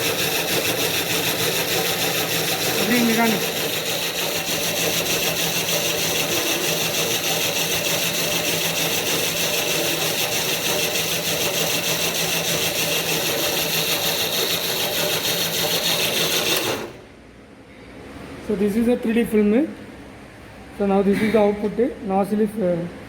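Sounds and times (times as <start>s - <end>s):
extruder motor hum and hiss: 0.0s - 17.1s
fast mechanical rattle: 0.0s - 17.1s.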